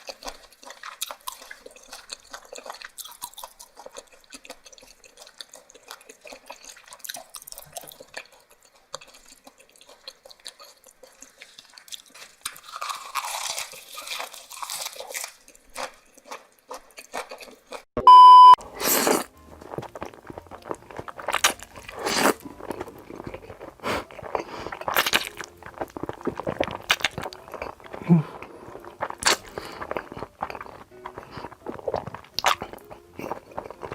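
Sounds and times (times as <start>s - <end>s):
crunching and chewing: 0.0s - 17.9s, 18.6s - 33.9s
electronic beep: 18.0s - 18.6s.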